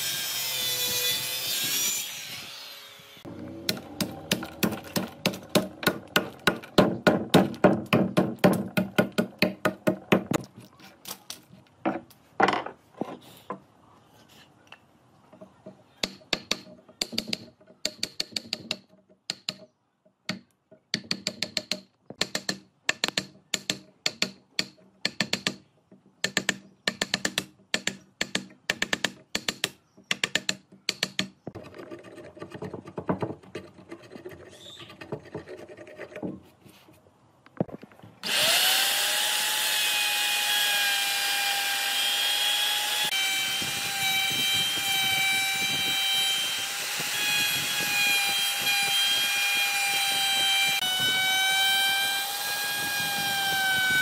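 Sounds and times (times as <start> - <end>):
hand tool striking wood: 3.6 - 10.5, 16.0 - 19.7.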